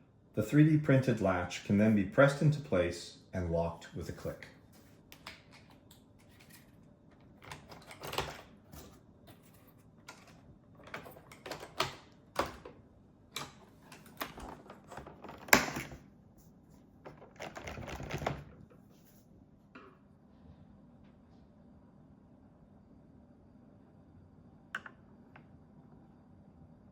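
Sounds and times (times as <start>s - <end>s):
plastic rubbing and rattling: 13.4s - 16.0s, 17.0s - 19.1s.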